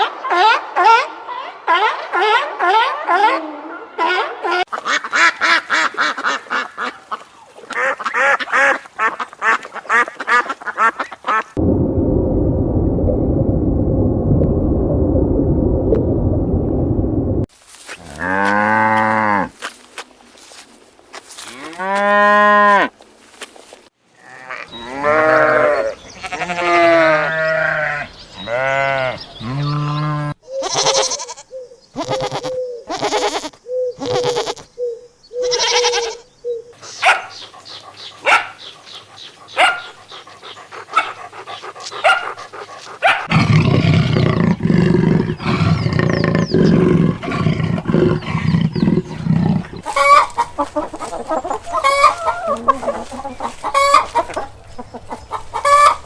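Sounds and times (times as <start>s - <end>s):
rough low sound: 11.6s - 17.5s, 42.5s - 54.9s
livestock bleating: 24.2s - 34.7s, 35.5s - 36.2s.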